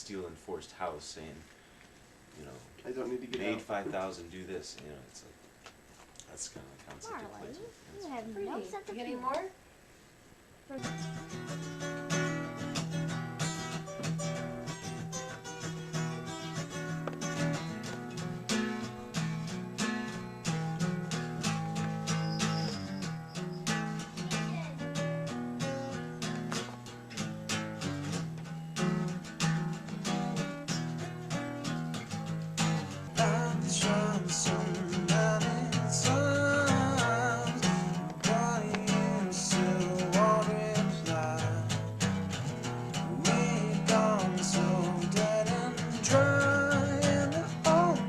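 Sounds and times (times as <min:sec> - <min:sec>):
acoustic guitar strumming chords: 0:10.7 - 0:48.0.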